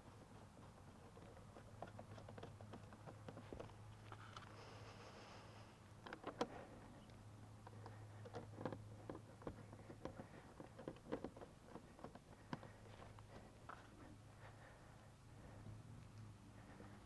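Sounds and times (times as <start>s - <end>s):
faint low hum: 0.0s - 17.0s
small clicks and taps of parts: 0.2s - 4.7s, 5.9s - 13.9s.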